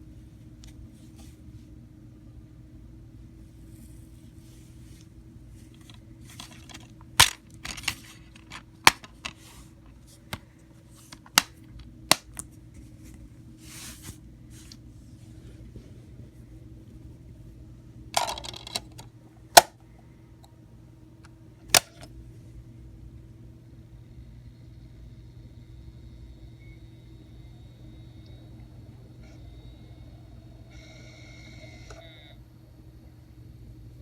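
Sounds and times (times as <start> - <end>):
faint low hum: 0.0 - 34.0
short rustling: 12.7 - 16.0.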